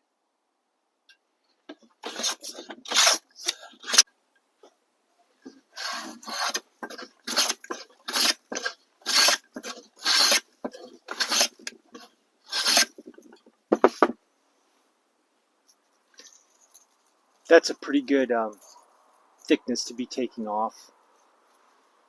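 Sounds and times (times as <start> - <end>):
plane shaving wood: 2.0 - 4.0, 5.5 - 13.0.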